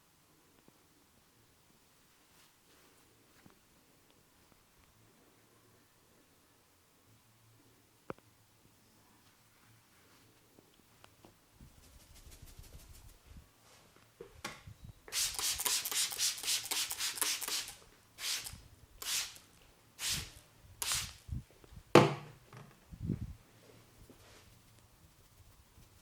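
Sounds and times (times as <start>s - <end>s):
hands rubbing hair and scalp: 11.7s - 13.2s, 15.1s - 19.4s, 24.0s - 26.0s.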